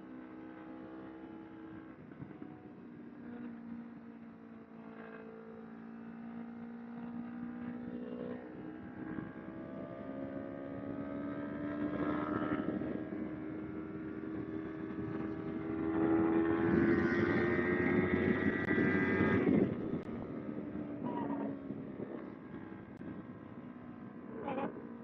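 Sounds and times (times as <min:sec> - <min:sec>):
motorcycle engine revving: 0:09.0 - 0:23.2.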